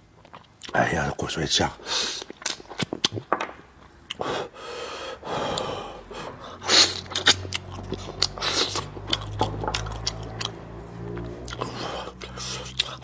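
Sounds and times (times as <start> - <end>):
person breathing hard and sniffing: 4.2 - 7.2, 11.6 - 13.0.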